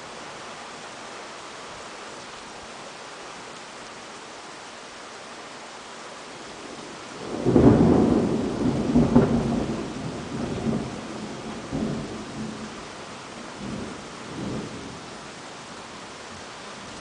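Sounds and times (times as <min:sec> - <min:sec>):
rain hiss: 0:00.0 - 0:17.0
thunderclap rumbling: 0:07.2 - 0:12.8, 0:13.6 - 0:15.0.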